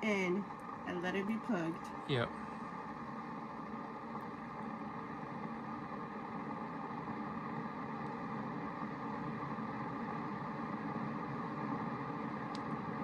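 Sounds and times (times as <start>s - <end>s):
coffee maker humming: 0.0s - 13.0s.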